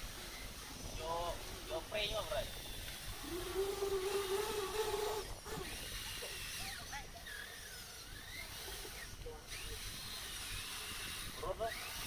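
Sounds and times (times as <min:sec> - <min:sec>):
small electric motors whining: 0:00.0 - 0:12.0.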